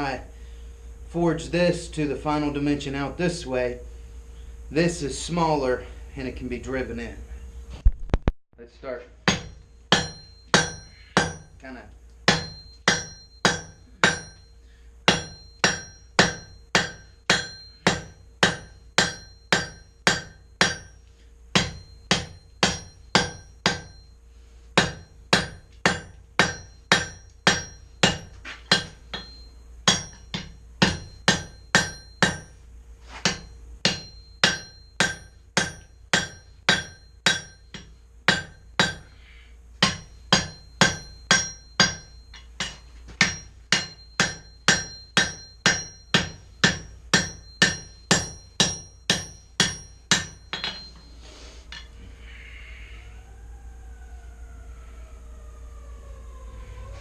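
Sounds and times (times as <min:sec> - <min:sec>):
hammer ringing on steel: 0:09.2 - 0:11.7, 0:12.3 - 0:24.2, 0:24.8 - 0:32.6, 0:33.2 - 0:39.2, 0:39.8 - 0:52.0.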